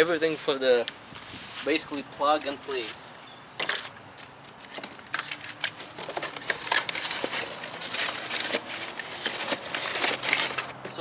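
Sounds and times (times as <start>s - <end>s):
packaging rustling and crinkling: 4.6s - 11.0s.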